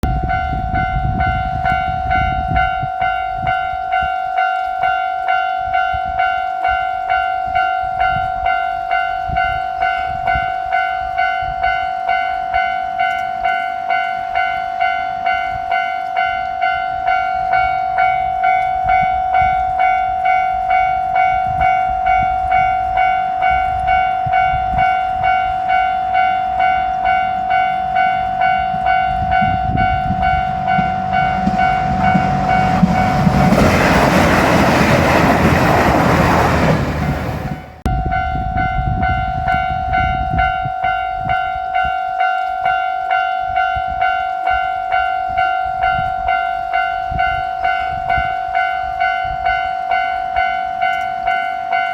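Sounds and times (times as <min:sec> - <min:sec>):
level crossing bell ringing: 0:00.3 - 0:33.5, 0:38.1 - 0:51.9
low rumble: 0:29.0 - 0:38.6.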